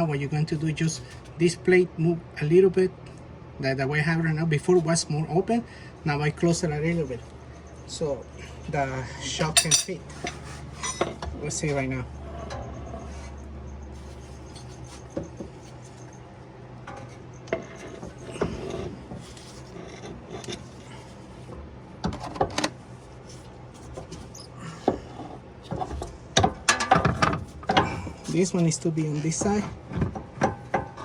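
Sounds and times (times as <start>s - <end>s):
metal suspension parts knocking: 9.6s - 10.0s.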